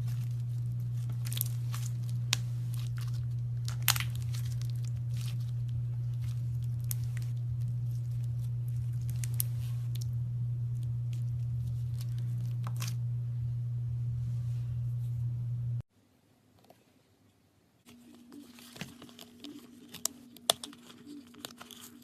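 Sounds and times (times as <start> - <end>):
slime crackling and tearing: 0.0 - 10.1
steady low hum: 0.0 - 15.9.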